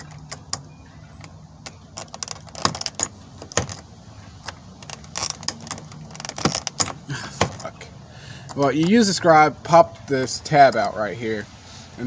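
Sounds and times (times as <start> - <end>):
small metallic clicks and scrapes: 0.0 - 7.8.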